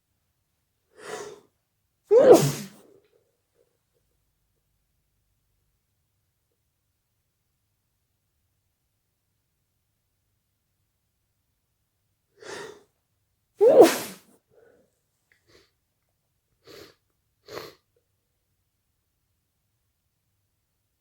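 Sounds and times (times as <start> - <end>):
person sneezing: 1.0 - 1.4, 2.1 - 2.8, 13.6 - 14.2
short breaths: 1.0 - 1.4, 2.1 - 2.8, 12.4 - 12.8.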